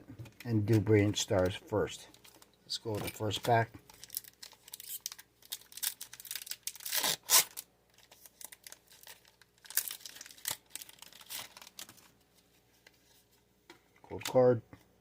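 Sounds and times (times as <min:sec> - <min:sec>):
foil wrapper tearing and crinkling: 0:03.1 - 0:12.1.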